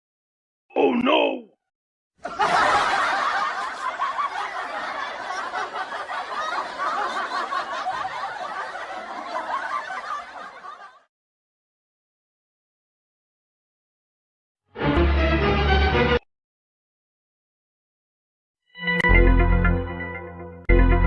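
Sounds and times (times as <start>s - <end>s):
people snickering and chuckling: 2.2s - 11.1s.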